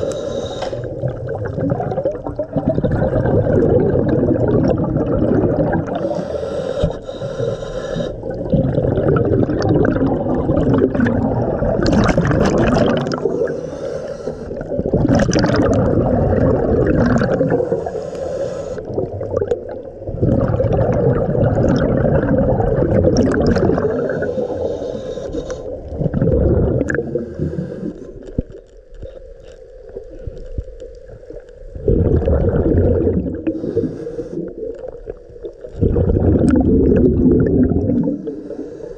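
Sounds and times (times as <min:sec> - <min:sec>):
regulator inhalation hiss: 0:00.0 - 0:01.0, 0:06.0 - 0:08.3, 0:13.2 - 0:14.8, 0:17.5 - 0:18.9, 0:24.0 - 0:25.8, 0:33.5 - 0:34.7, 0:38.2 - 0:38.9
exhaled bubbles gurgling: 0:00.0 - 0:38.9.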